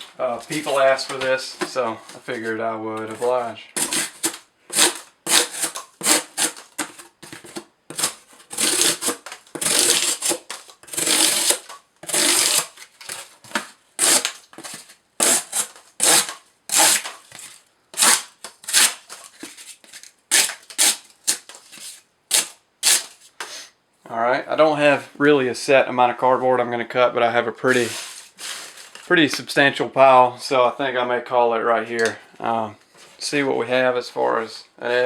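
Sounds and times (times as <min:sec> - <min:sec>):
knife cutting cardboard: 0:03.1 - 0:23.2.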